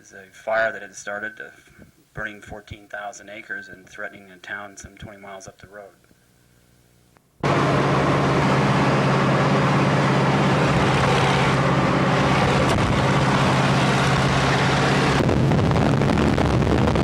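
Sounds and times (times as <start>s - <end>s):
light aircraft engine drone: 7.4s - 16.1s
rushing air: 7.4s - 17.0s.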